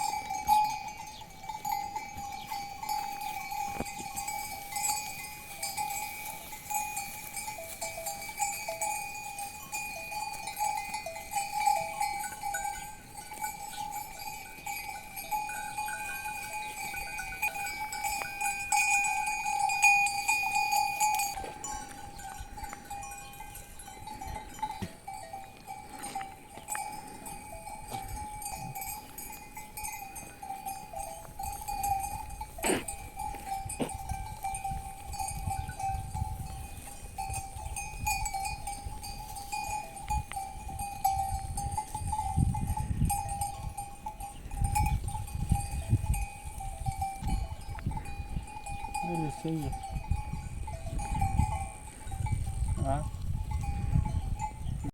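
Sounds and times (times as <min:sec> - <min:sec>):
livestock bells clinking: 0:00.0 - 0:54.9
wind rumbling on microphone: 0:16.2 - 0:54.9.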